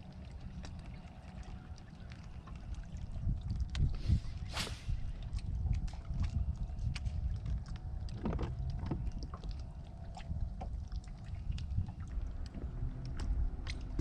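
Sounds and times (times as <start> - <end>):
water lapping against boat hull: 0.0 - 14.0
wind buffeting microphone: 2.9 - 14.0.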